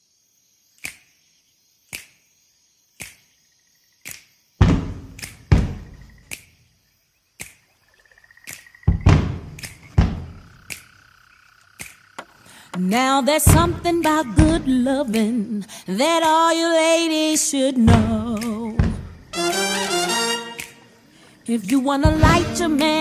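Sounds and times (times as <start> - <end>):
finger snap clicks: 0.8 - 1.1, 1.9 - 2.2, 3.0 - 3.3, 4.0 - 4.3, 5.2 - 5.5, 6.3 - 6.5, 7.4 - 7.6, 9.5 - 9.9, 10.6 - 10.9, 11.8 - 12.0, 18.2 - 18.7, 20.6 - 21.0, 21.6 - 22.0.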